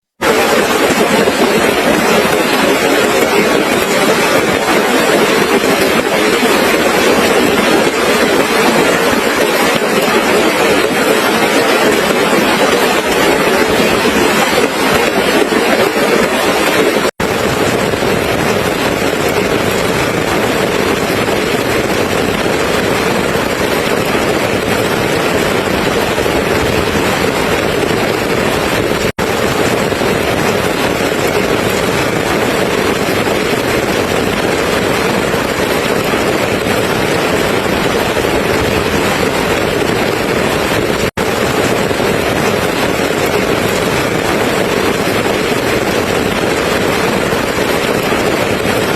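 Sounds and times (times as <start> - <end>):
steady rain hiss: 0.2 - 35.2.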